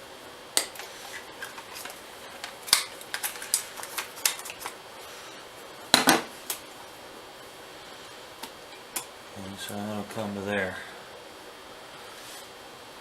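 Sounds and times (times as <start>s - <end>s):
wire clicks and rustles: 0.6s - 5.2s.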